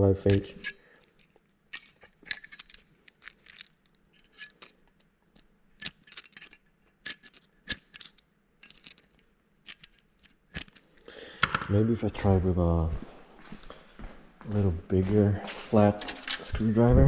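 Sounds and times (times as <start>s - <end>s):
screwdriver clicking and scraping metal: 0.2s - 10.9s.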